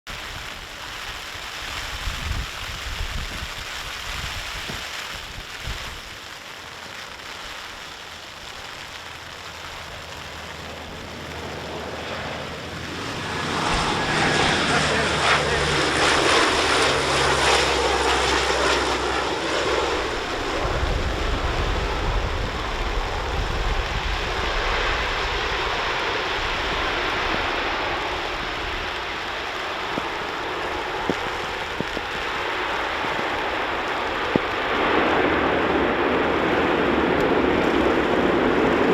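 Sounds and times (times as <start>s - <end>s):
turboprop aircraft engines droning: 9.1s - 38.9s.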